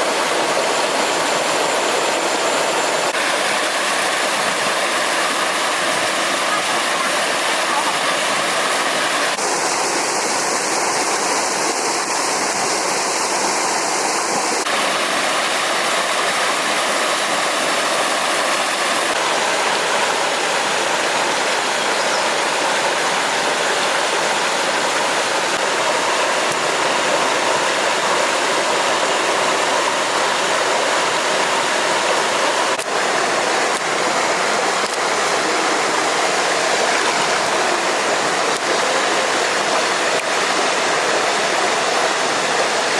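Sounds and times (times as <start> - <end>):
stream water rushing: 0.0 - 42.9.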